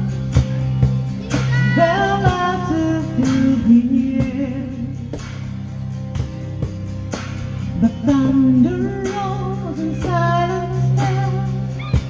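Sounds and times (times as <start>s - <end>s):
plucked guitar: 0.0s - 12.0s
person singing: 1.2s - 4.9s.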